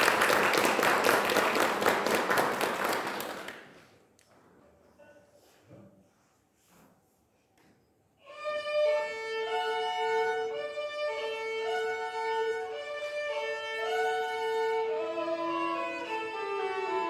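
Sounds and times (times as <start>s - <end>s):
violin melody: 8.2s - 17.0s.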